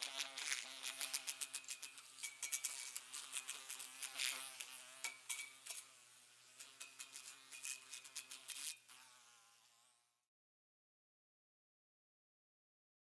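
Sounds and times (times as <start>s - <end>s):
fly ticking against glass: 0.0s - 9.7s
housefly buzzing: 0.0s - 10.2s.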